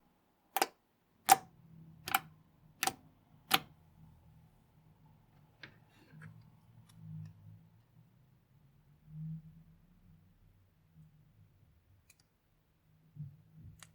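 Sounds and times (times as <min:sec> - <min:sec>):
soft handling sounds: 0:05.3 - 0:07.4.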